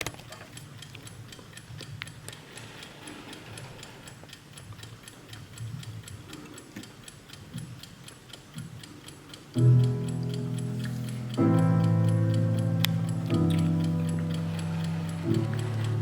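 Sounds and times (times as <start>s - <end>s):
alarm clock ticking: 0.0s - 16.0s.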